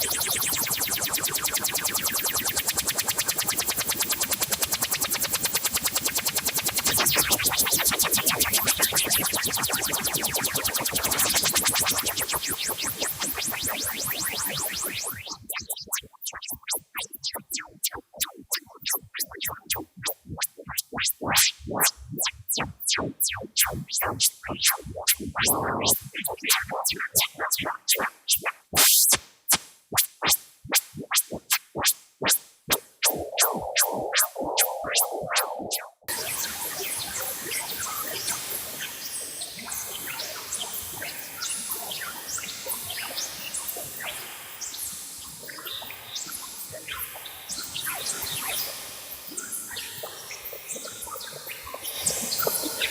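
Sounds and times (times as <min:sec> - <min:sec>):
sparse irregular noise clicks: 0:00.0 - 0:28.9
rapid clicking noise pulses: 0:00.0 - 0:36.1
steady band of mid-pitched noise: 0:09.8 - 0:29.0
noise wash: 0:10.1 - 0:29.1, 0:32.7 - 0:36.1.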